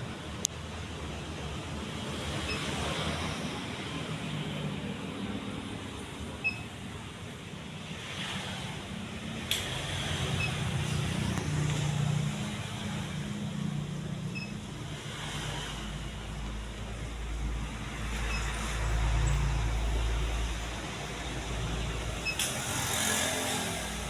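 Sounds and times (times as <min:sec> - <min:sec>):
air noise from fan: 0:00.0 - 0:24.0
sharp click: 0:09.5 - 0:09.8.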